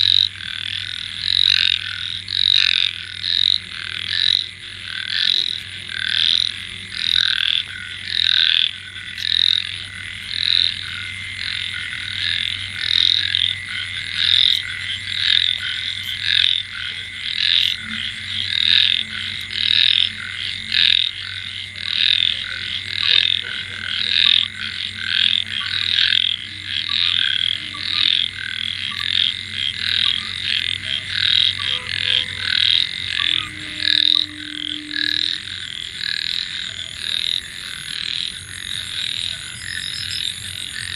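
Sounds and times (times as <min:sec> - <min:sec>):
frogs croaking: 0:00.0 - 0:40.9
thin steady high tone: 0:23.4 - 0:37.9.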